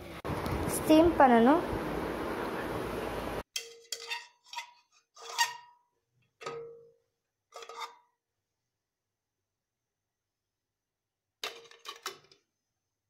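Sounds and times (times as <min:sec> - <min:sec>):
steel cookware clinking: 0:03.5 - 0:05.8.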